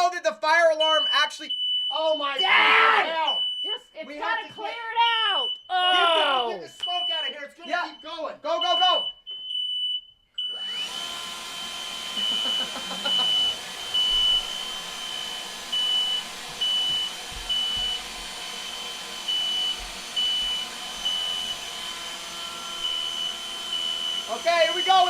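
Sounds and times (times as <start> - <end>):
smoke alarms beeping: 0.0 - 11.0, 11.8 - 25.0
electric motor whirring: 10.5 - 25.0.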